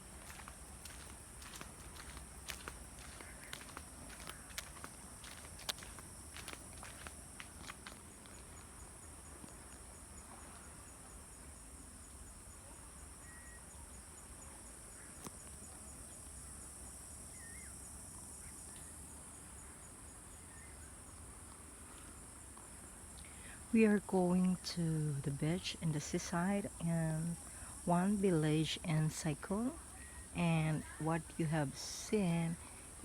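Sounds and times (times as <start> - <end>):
fast pulsing insect call: 0.0 - 9.2
high-pitched insect chorus: 0.0 - 9.6.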